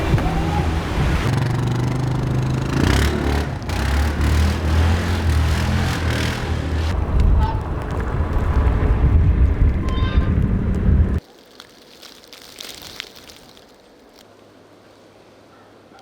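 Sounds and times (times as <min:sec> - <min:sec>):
vehicle engine running: 0:00.0 - 0:11.2
street noise: 0:00.0 - 0:11.3
faint outdoor ambience: 0:00.0 - 0:16.0.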